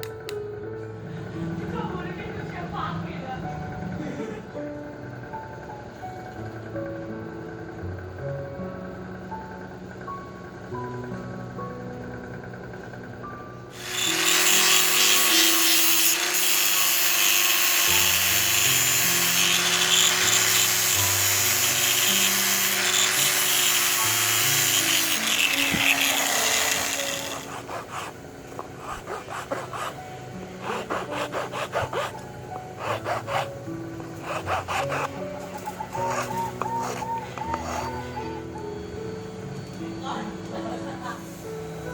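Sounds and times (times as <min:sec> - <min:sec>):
background music: 0:00.0 - 0:41.9
power tool sanding: 0:13.8 - 0:35.2
hand rubbing strokes: 0:18.6 - 0:30.0, 0:30.6 - 0:38.2.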